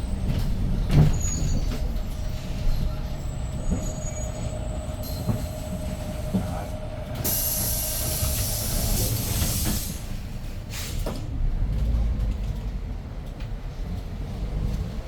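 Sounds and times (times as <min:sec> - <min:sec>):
bus engine rumbling: 0:00.0 - 0:15.0
compressed air hissing: 0:04.9 - 0:10.1.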